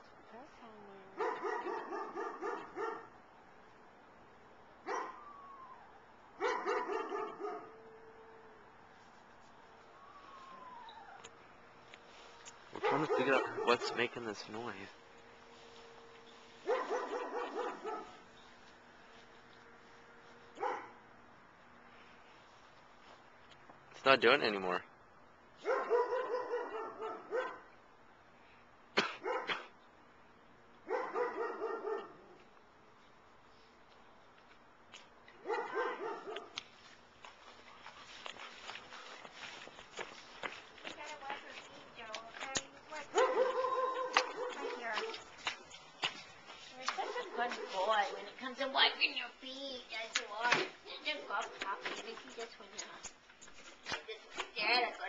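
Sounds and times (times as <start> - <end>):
animal yelping: 4.9 - 7.6, 10.0 - 11.3.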